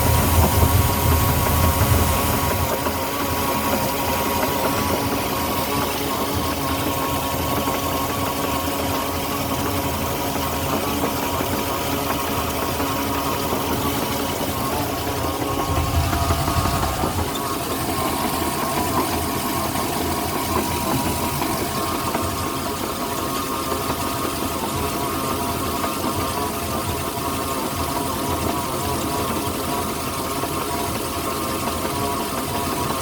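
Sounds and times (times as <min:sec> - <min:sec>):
engine whine: 0:00.0 - 0:08.5, 0:12.1 - 0:20.9
boat engine running: 0:00.0 - 0:22.3.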